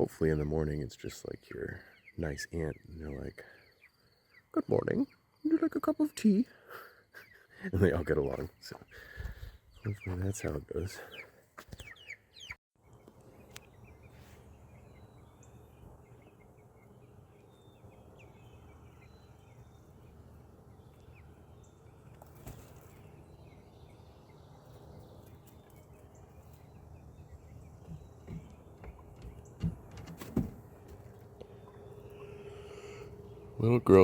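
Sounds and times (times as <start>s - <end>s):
faint bird chirps: 0.0s - 29.6s, 30.8s - 34.0s
low background hum: 12.8s - 34.0s.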